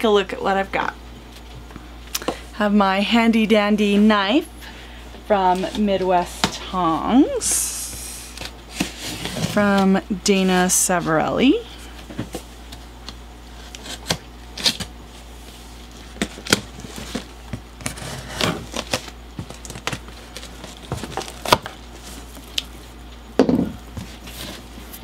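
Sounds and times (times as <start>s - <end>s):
knife cutting packing tape: 13.7s - 14.9s.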